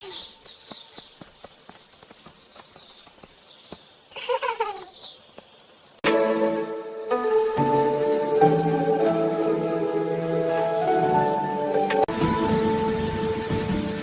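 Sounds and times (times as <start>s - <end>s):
birds chirping: 0.0s - 14.0s
melodic music: 6.0s - 14.0s.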